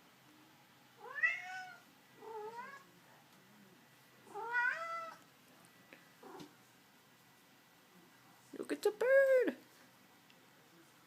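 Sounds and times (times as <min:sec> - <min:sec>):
cat meowing: 0:01.0 - 0:02.8, 0:04.3 - 0:05.2.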